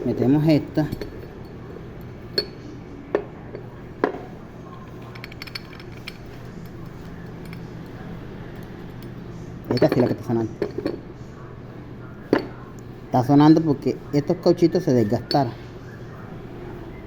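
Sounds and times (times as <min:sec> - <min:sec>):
low steady hum: 0:00.0 - 0:17.0
metal parts clinking: 0:04.8 - 0:11.0.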